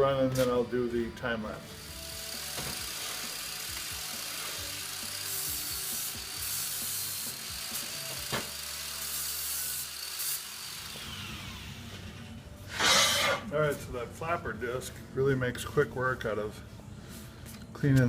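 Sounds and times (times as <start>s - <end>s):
angle grinder grinding steel: 0.0s - 13.5s
grinder winding down: 1.6s - 13.5s.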